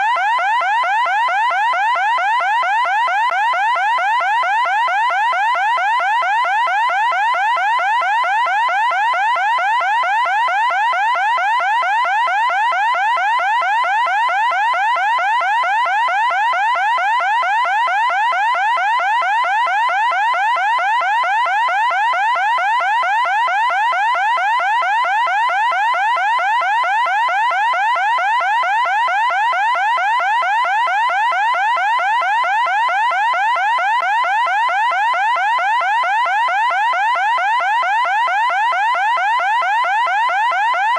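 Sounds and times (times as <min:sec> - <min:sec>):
loud electronic siren: 0:00.0 - 0:40.9.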